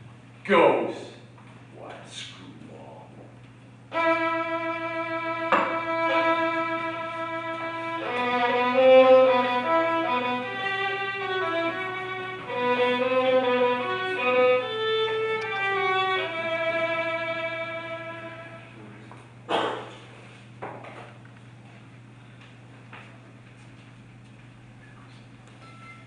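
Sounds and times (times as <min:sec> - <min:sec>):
solo violin melody: 0:03.9 - 0:18.6.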